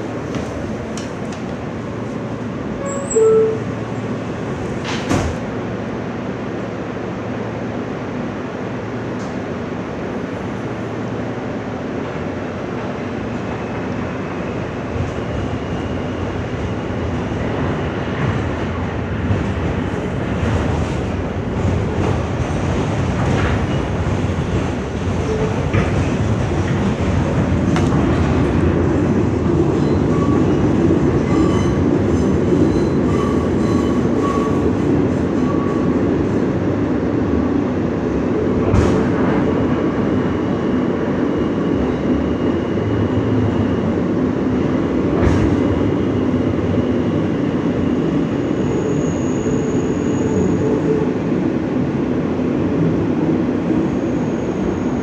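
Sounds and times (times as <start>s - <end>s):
subway wheels rumbling on track: 0.0s - 55.0s.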